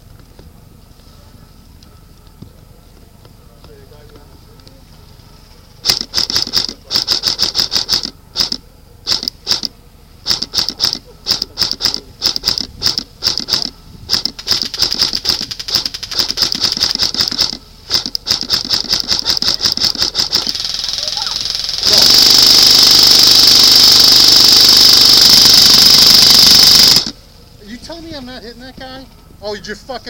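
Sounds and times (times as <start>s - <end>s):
airsoft rifle automatic fire: 5.8s - 27.2s.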